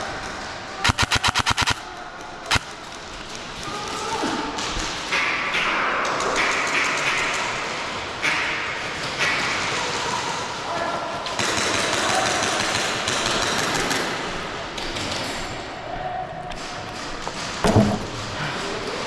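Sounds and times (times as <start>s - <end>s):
airsoft gun shots: 0.8s - 1.8s.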